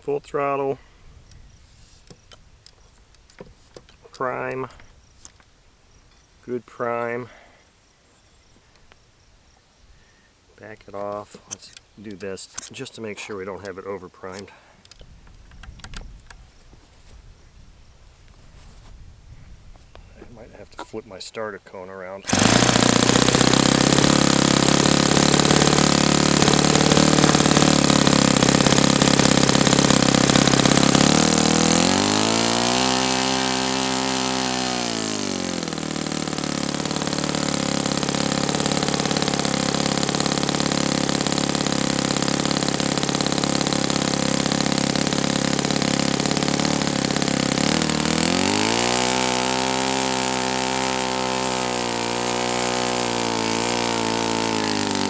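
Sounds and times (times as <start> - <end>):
model engine running: 22.2 - 55.0.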